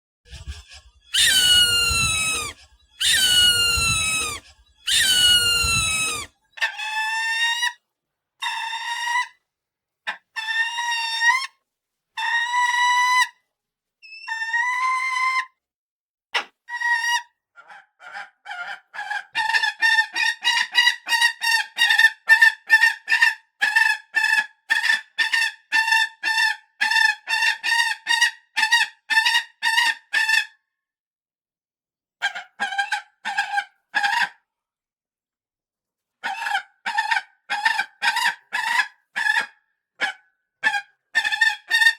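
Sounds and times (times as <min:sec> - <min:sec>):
falcon screeching calls: 0:00.3 - 0:07.6.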